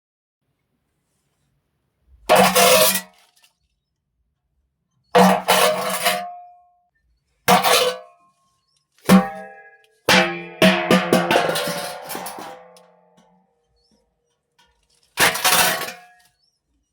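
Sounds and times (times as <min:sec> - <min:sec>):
metal pot clanging: 0:05.2 - 0:06.5, 0:07.5 - 0:08.1, 0:09.1 - 0:13.3, 0:15.2 - 0:16.4.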